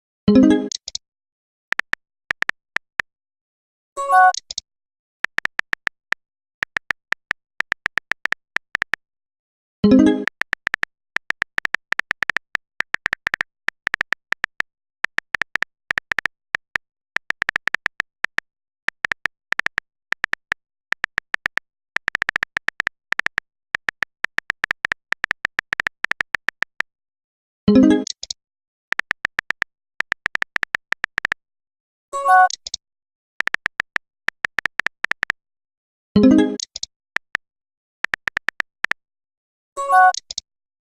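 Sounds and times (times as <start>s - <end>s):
phone keyboard typing clicks: 0.3s - 1.0s, 1.7s - 3.1s, 4.2s - 4.6s, 5.2s - 9.0s, 9.8s - 26.9s, 27.7s - 31.4s, 32.3s - 32.8s, 33.4s - 35.4s, 36.2s - 37.4s, 38.0s - 39.0s, 39.9s - 40.4s.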